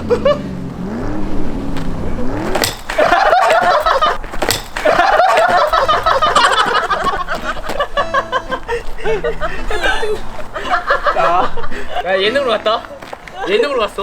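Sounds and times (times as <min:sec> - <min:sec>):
people laughing: 0:00.0 - 0:00.6, 0:02.7 - 0:14.0
sharp knocks: 0:01.8 - 0:08.0.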